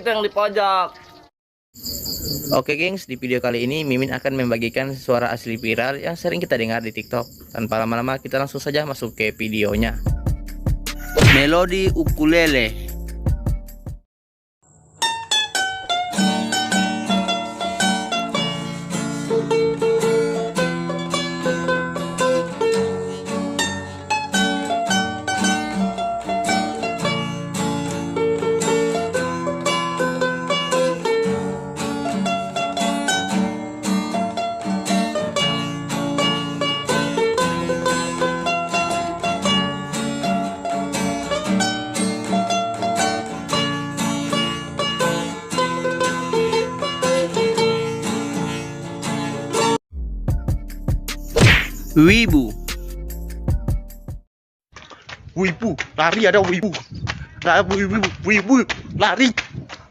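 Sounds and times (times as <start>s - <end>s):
ukulele melody: 15.0s - 48.3s, 50.4s - 54.0s.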